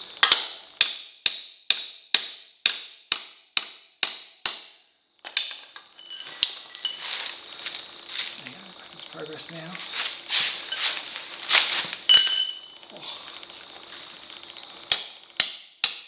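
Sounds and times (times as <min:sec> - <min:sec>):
tools clattering and scraping: 0:05.2 - 0:08.5, 0:09.8 - 0:14.9
hammer striking metal: 0:12.1 - 0:12.8, 0:14.9 - 0:16.0.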